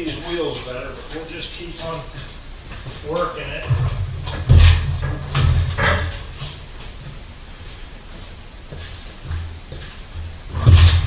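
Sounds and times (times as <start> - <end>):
heavy low thump: 2.2 - 6.6, 9.3 - 11.0
metal knocking and scraping: 2.8 - 6.6, 10.5 - 11.0.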